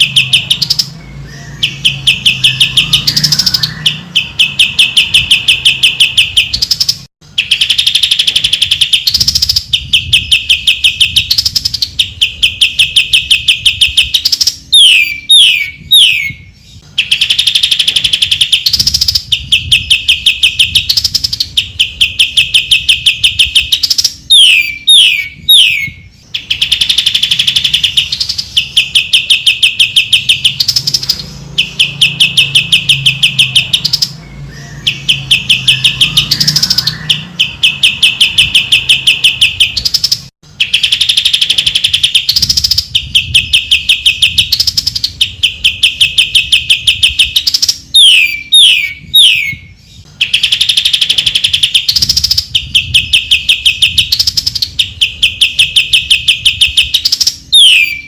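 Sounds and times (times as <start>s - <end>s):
bird singing rapid trills: 0.0s - 58.0s
downward-sweeping bird notes: 24.3s - 40.0s.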